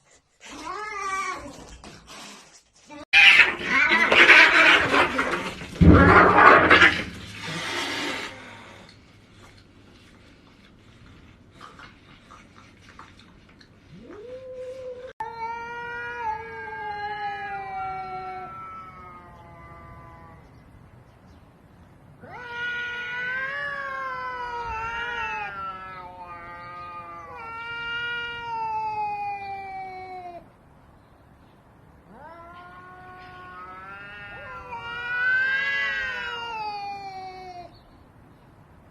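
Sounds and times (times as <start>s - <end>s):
cats yowling: 13.9s - 20.5s, 22.2s - 30.5s, 32.1s - 37.7s.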